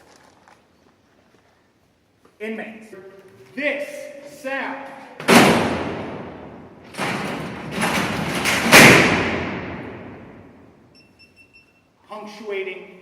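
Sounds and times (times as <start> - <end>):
steel cell door clanging: 5.2 - 10.5
steel door slam: 5.2 - 10.6
sliding door rolling rattle: 6.8 - 10.1.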